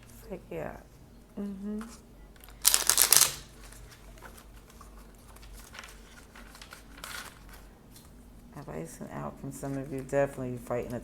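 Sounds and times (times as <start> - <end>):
card handling rustle: 1.8 - 8.2
cards riffling: 2.4 - 8.1.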